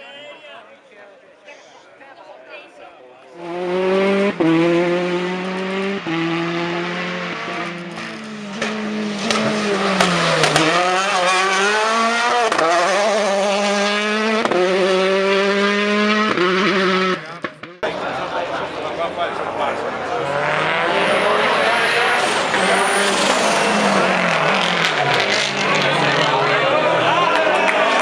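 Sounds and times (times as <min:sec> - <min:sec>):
rally car engine at high revs: 0:03.4 - 0:17.9, 0:19.9 - 0:27.2.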